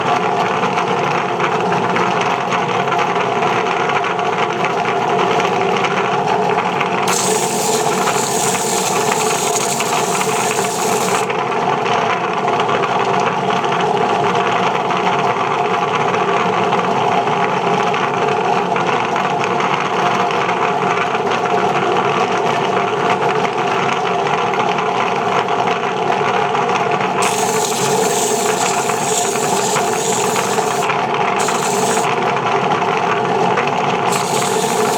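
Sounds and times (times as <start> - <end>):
harsh hissy scraping: 7.1 - 11.3, 27.2 - 32.1, 34.1 - 34.9
sanding disc grinding: 7.1 - 11.3, 27.2 - 32.1, 34.1 - 34.9.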